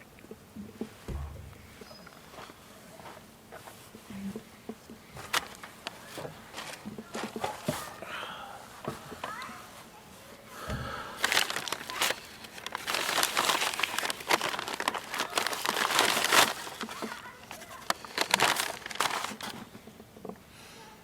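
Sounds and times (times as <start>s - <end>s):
material crinkling and rustling: 5.1s - 8.0s, 8.9s - 20.4s.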